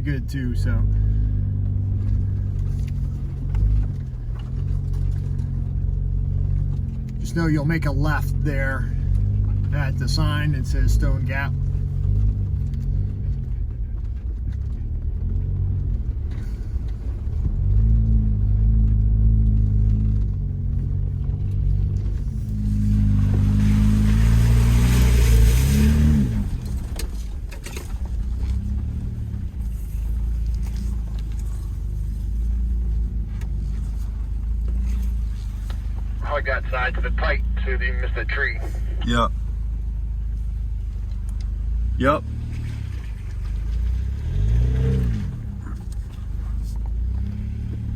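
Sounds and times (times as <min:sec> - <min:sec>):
car engine revving uphill: 0:00.0 - 0:47.9.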